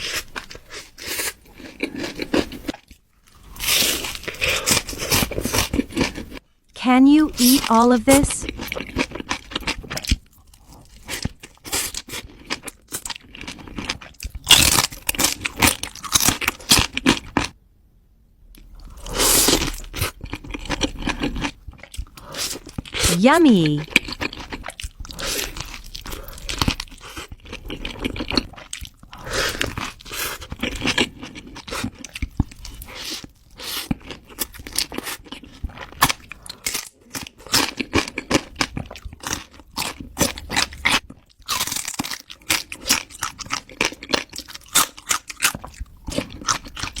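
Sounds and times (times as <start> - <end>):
chewing: 23.8 - 47.0
taco shells crunching: 23.8 - 47.0.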